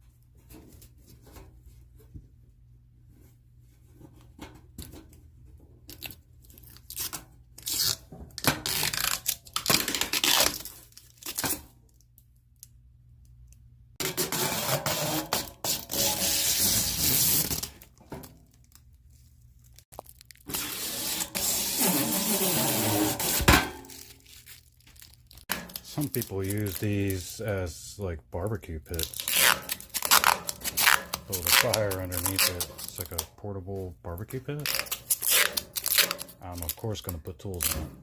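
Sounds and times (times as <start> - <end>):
plastic film peeling off: 5.9 - 12.0, 17.0 - 23.0, 23.9 - 27.2, 28.9 - 33.3, 34.6 - 36.8.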